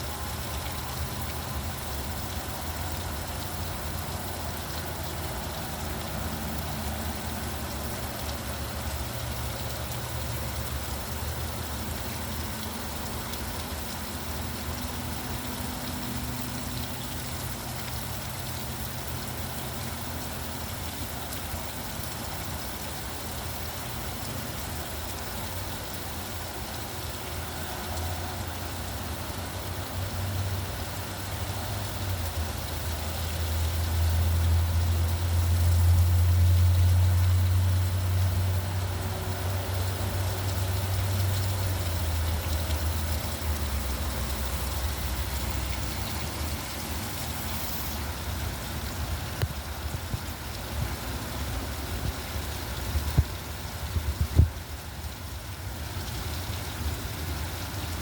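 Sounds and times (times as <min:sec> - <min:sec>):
steady rain falling: 0:17.6 - 0:58.0
road traffic hum: 0:33.0 - 0:53.8.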